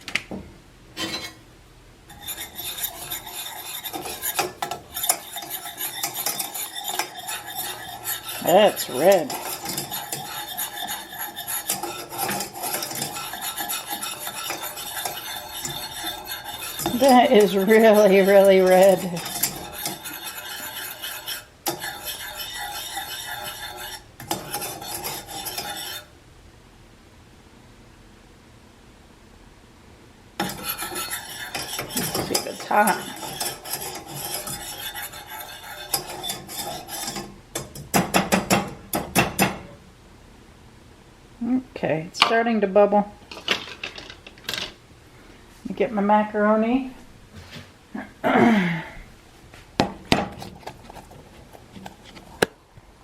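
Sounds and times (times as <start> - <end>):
utensil scraping a pot: 1.0 - 1.4, 2.1 - 26.1, 30.4 - 39.7, 50.1 - 52.5.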